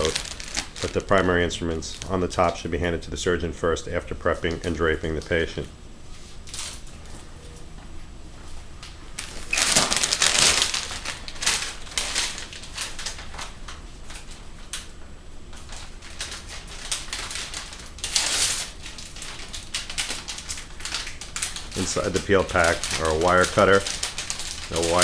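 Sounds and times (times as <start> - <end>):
plastic wrapping crinkling: 0.0 - 2.7, 6.4 - 7.2, 8.8 - 14.9, 15.5 - 25.0.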